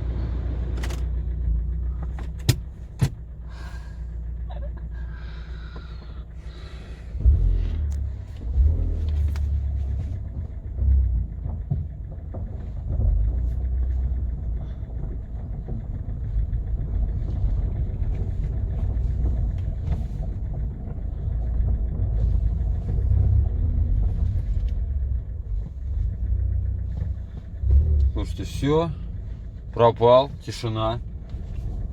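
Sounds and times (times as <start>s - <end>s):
engine and road rumble: 0.0s - 31.9s
sharp thumps from bumps: 5.7s - 28.2s.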